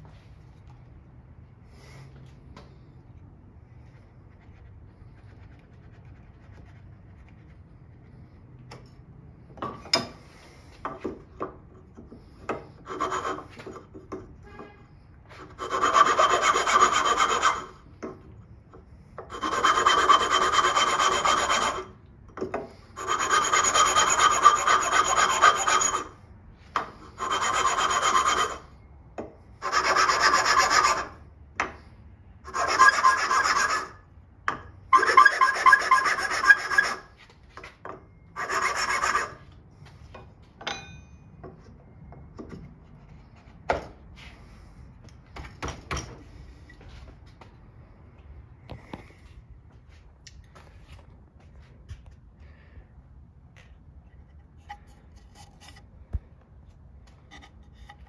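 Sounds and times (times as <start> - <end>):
tool scraping and rasping wood: 12.1 - 14.0, 15.3 - 17.8, 19.2 - 22.0, 22.6 - 26.2, 26.8 - 28.7, 29.6 - 31.2, 32.5 - 34.0, 34.9 - 37.3, 38.4 - 39.4, 54.3 - 55.9, 57.1 - 58.0.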